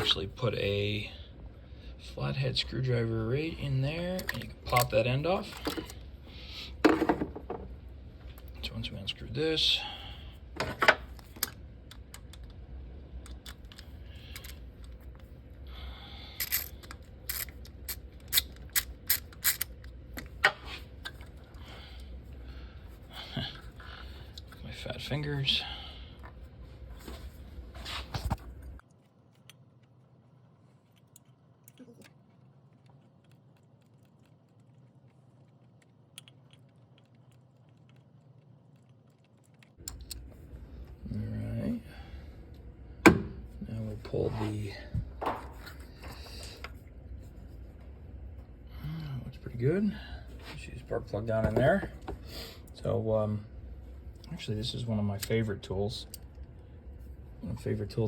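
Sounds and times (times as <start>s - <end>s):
low steady hum: 0.0s - 58.0s
tools clicking on engine parts: 16.4s - 20.3s.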